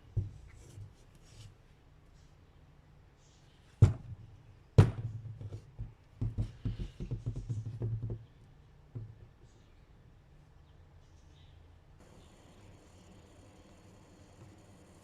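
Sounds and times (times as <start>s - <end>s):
steady low hum: 12.0s - 15.0s.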